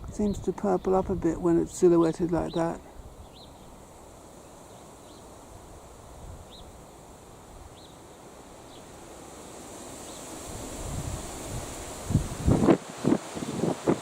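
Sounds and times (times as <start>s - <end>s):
steady high-pitched hiss: 0.0s - 14.0s
wind rumble on microphone: 10.4s - 14.0s.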